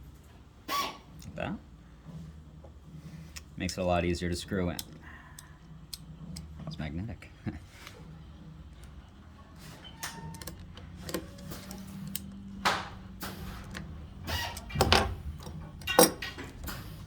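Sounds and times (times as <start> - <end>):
metal hardware clicks and scrapes: 9.9 - 12.4, 13.2 - 17.0.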